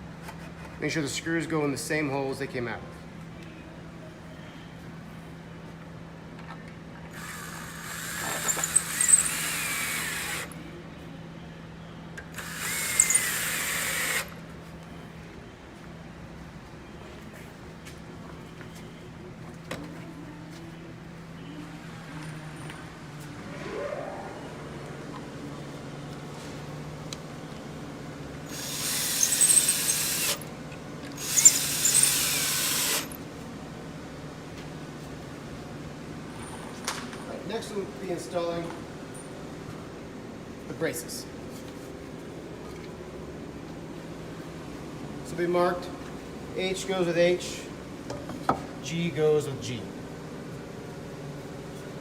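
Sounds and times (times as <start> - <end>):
power drill driving screws into wood: 7.1 - 10.5, 12.4 - 14.3, 28.5 - 30.4, 31.1 - 33.2.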